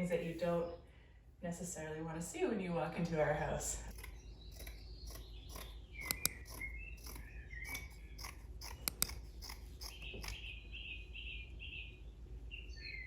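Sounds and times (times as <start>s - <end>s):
sharp clicks: 3.9s - 10.4s
small bird chirping: 3.9s - 13.0s.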